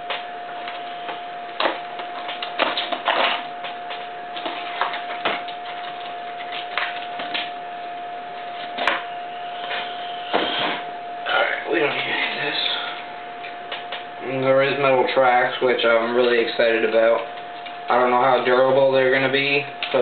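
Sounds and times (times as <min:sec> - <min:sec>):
steady high-pitched tone: 0:00.0 - 0:20.0.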